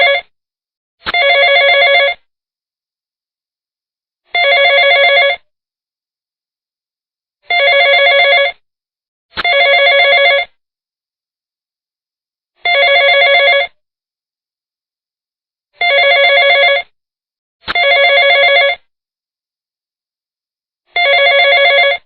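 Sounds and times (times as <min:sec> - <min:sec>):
telephone ringing: 0:00.0 - 0:00.3, 0:01.1 - 0:02.2, 0:04.3 - 0:05.4, 0:07.5 - 0:08.6, 0:09.4 - 0:10.6, 0:12.6 - 0:13.8, 0:15.8 - 0:17.0, 0:17.7 - 0:18.9, 0:21.0 - 0:22.0.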